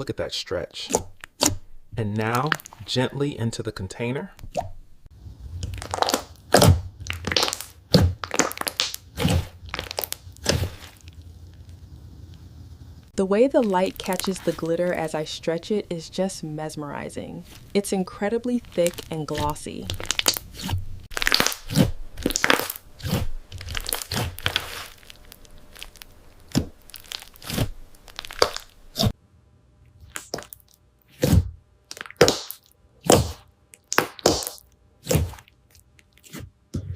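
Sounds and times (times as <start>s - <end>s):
beaded slime crunching: 5.4s - 11.8s, 13.5s - 15.2s, 17.4s - 29.1s, 31.9s - 36.4s.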